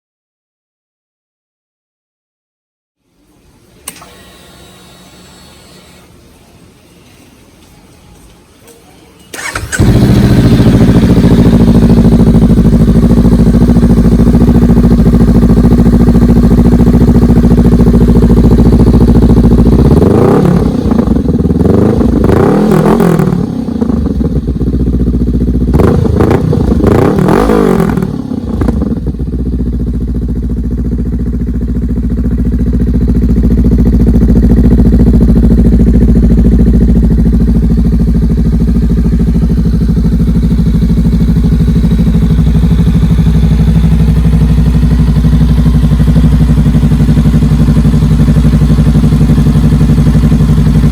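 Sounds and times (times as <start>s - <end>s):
motorcycle engine idling and revving: 8.1s - 50.9s.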